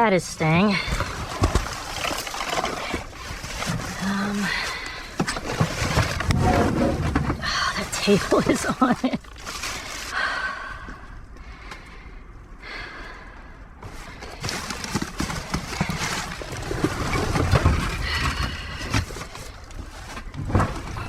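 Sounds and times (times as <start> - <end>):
scrap clattering in a dumpster: 0.8 - 8.7, 13.9 - 21.0
low rumble: 5.4 - 8.6.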